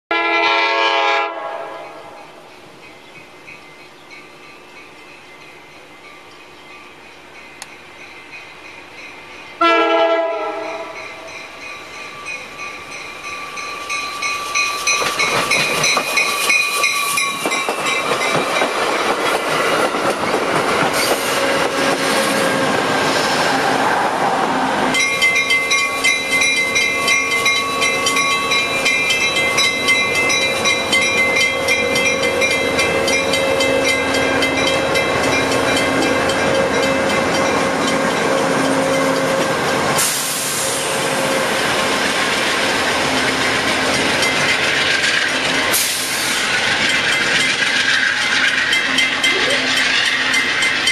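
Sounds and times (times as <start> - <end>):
train horn blast: 0.1 - 2.2, 9.6 - 11.3
train wheels clattering on rails: 2.2 - 24.0, 24.9 - 50.9.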